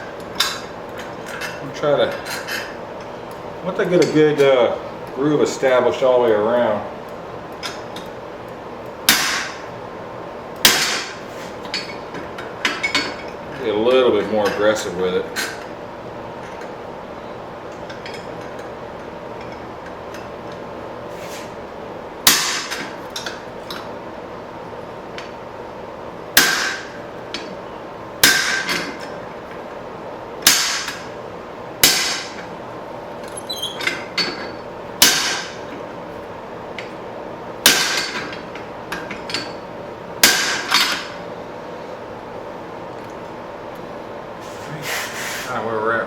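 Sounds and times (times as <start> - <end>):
steady background hum: 0.0 - 46.0
hammer striking metal tool: 22.3 - 22.9, 26.4 - 27.5, 28.2 - 28.9, 30.4 - 31.1, 31.8 - 32.4, 35.0 - 35.6, 37.7 - 38.4.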